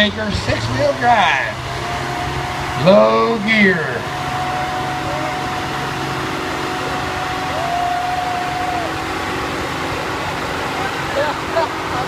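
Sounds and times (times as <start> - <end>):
thin steady whine: 0.0 - 12.0
truck engine running: 0.0 - 12.0.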